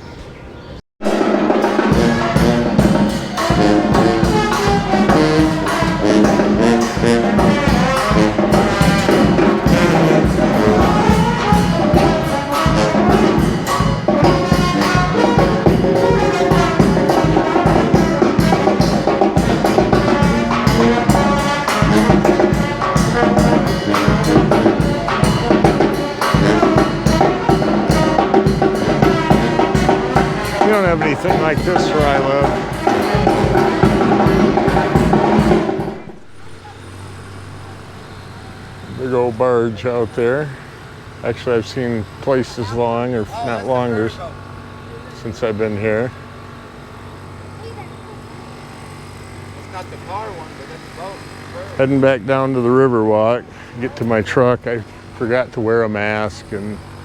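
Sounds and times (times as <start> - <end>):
steady drum beat: 1.0 - 39.3
trombone: 1.0 - 39.3
brass band playing jazz: 1.0 - 40.7
trumpet: 1.0 - 41.5.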